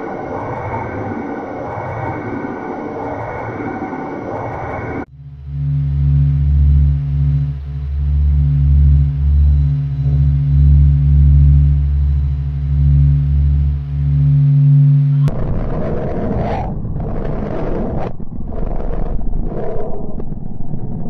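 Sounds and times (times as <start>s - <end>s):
low droning chord: 0.0s - 15.6s
deep rumbling: 0.0s - 21.0s.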